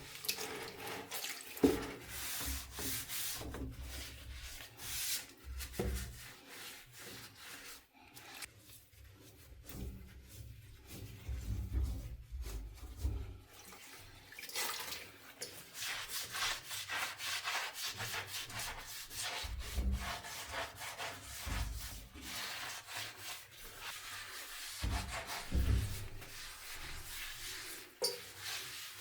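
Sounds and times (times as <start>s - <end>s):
bathtub scrubbing strokes: 0.0s - 29.0s.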